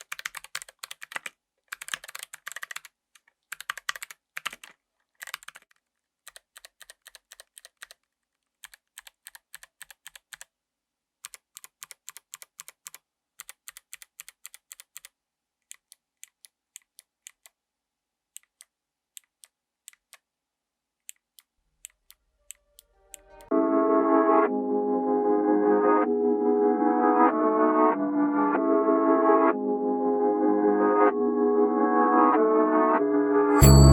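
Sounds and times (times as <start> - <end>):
clicky keyboard typing: 0.0 - 10.5, 11.2 - 17.6.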